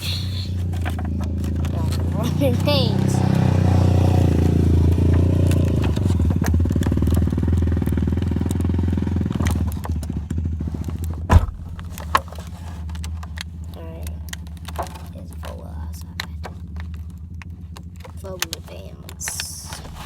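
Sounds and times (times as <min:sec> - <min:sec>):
motor engine humming: 0:00.0 - 0:20.0
sharp thump: 0:11.3 - 0:12.0.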